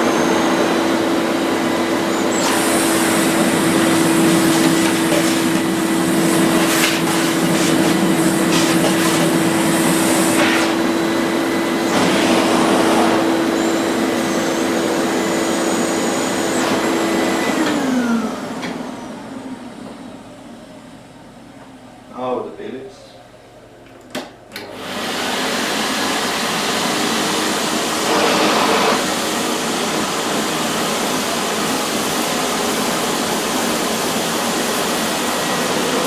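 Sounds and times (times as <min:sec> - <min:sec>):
vacuum motor winding down: 0:00.0 - 0:19.9
vacuum cleaner running: 0:00.0 - 0:22.1, 0:24.5 - 0:36.0.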